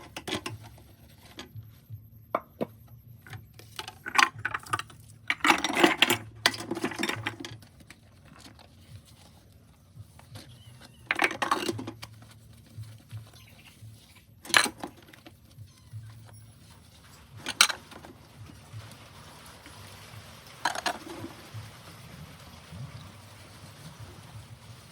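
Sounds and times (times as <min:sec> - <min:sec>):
dishes clattering: 0:03.8 - 0:07.6, 0:11.1 - 0:12.0, 0:17.4 - 0:18.1, 0:20.6 - 0:21.3.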